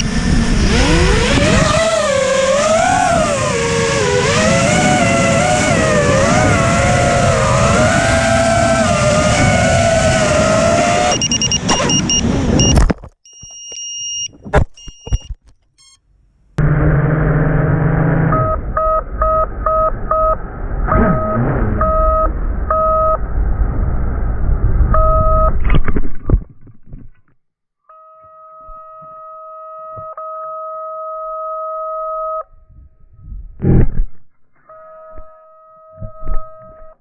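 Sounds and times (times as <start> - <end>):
drone warning beeps: 11.1 - 16.0, 18.3 - 23.2, 25.0 - 25.6, 34.7 - 37.0
steady electronic tone: 15.8 - 25.6, 34.6 - 37.0.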